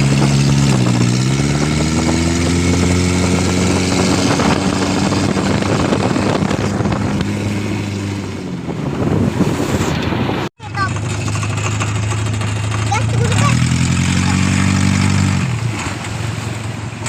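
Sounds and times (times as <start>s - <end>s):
boat engine running: 0.0s - 17.0s.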